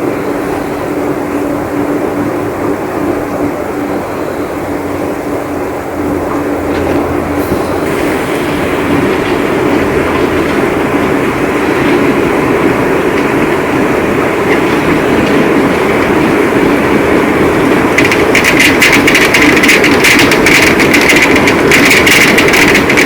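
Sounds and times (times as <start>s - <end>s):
heavy rain pouring: 6.0s - 23.0s
rolling thunder: 6.1s - 23.0s.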